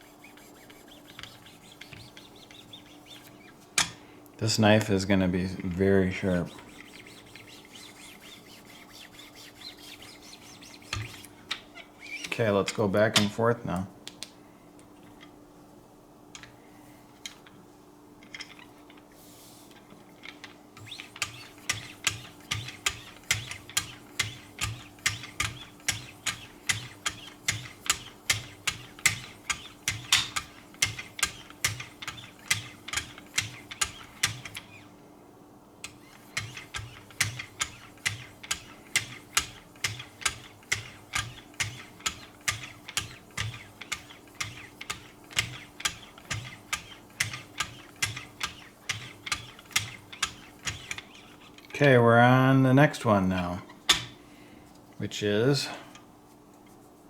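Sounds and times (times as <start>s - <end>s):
knife scraping on sharpener: 0.0s - 3.9s, 6.2s - 12.4s, 20.8s - 34.9s, 35.8s - 51.7s
faint steady hum: 0.0s - 57.0s.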